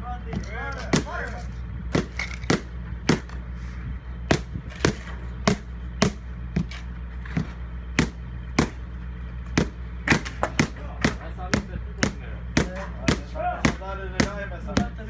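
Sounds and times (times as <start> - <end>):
low machine hum: 0.0 - 15.0
hammer knocks on stone pavers: 9.6 - 15.0.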